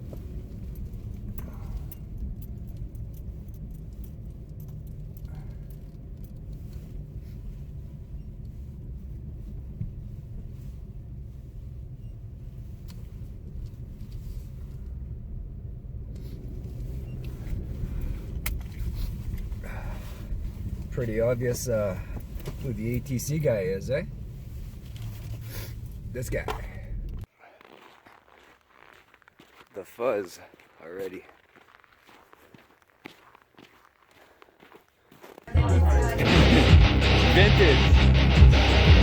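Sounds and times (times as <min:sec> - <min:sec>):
faint clicks and rattles: 0:00.0 - 0:10.6
car engine and road noise: 0:00.0 - 0:27.3, 0:35.4 - 0:39.0.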